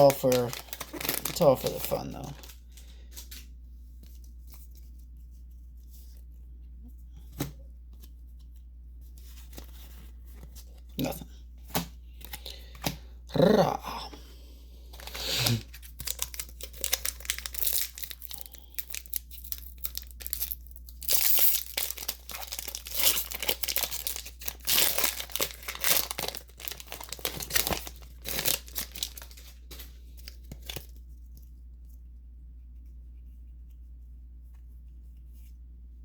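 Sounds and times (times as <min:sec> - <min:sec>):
foil wrapper tearing and crinkling: 0:00.0 - 0:03.4, 0:15.0 - 0:30.9.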